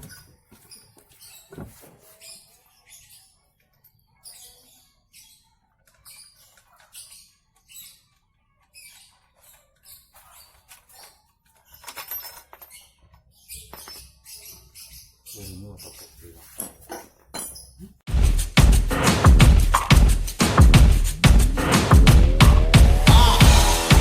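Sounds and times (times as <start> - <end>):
light scraping and rustling: 0.0 - 2.9, 15.8 - 18.0
metallic clinks: 11.6 - 14.2.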